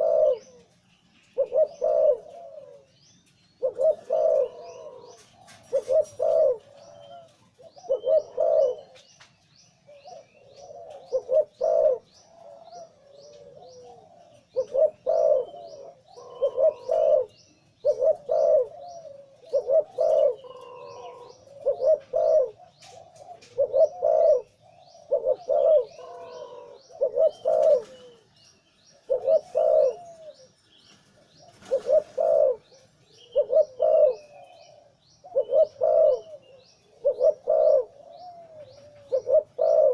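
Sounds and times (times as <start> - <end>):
faint high bird chirps: 0.0 - 9.3
dove cooing: 0.0 - 39.9.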